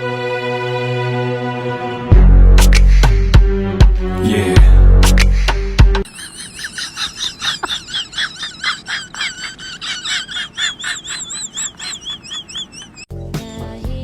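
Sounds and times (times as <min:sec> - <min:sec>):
music with heavy bass: 0:02.1 - 0:06.0
animal chirping calls: 0:06.1 - 0:13.6.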